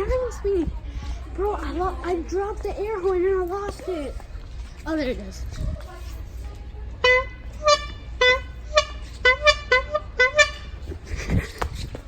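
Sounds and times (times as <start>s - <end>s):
canned air horn toots: 7.0s - 10.8s.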